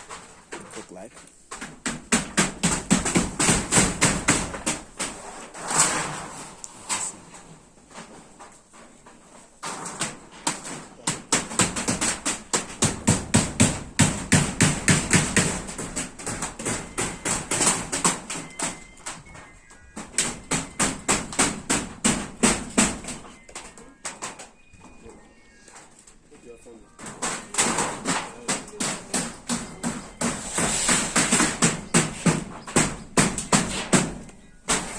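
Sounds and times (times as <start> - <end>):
hammer striking nails: 1.5 - 5.5, 9.6 - 24.6, 26.9 - 34.9.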